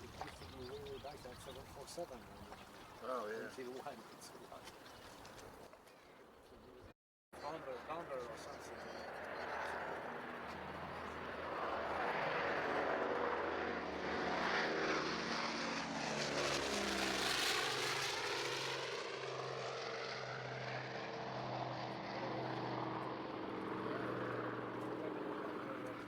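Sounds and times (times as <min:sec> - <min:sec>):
propeller airplane flying overhead: 0:00.0 - 0:05.6, 0:07.4 - 0:26.0.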